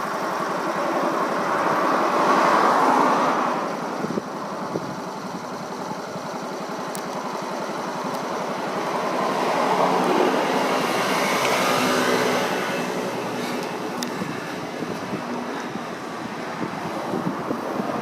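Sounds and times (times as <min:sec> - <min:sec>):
small motorcycle engine running: 0:03.7 - 0:18.0.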